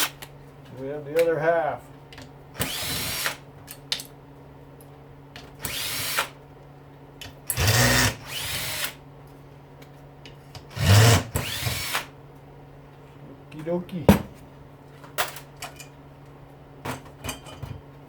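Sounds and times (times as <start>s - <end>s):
power drill spinning: 2.6s - 3.4s, 5.6s - 6.3s, 7.5s - 9.0s, 10.7s - 12.1s.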